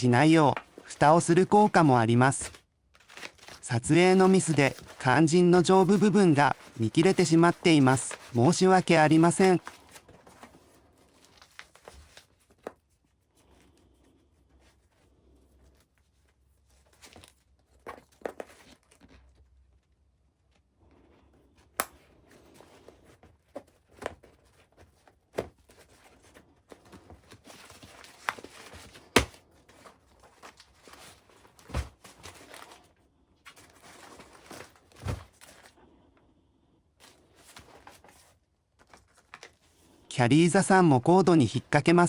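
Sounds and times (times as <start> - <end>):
fabric rustling and crinkling: 0.0 - 13.8, 22.1 - 35.8.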